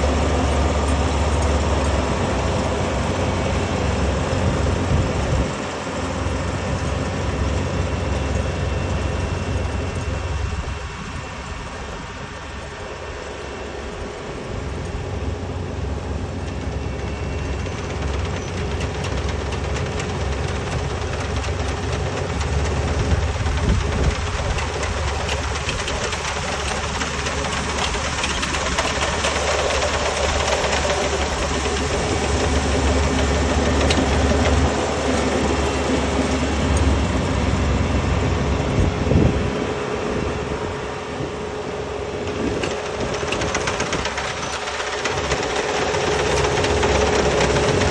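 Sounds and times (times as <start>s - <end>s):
combine harvester engine running: 0.0s - 47.9s.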